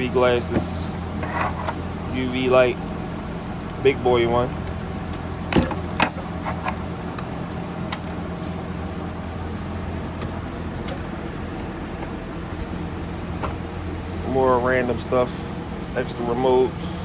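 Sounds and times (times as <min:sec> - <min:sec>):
steady low hum: 0:00.0 - 0:17.0
metal drawer shutting: 0:05.5 - 0:06.8.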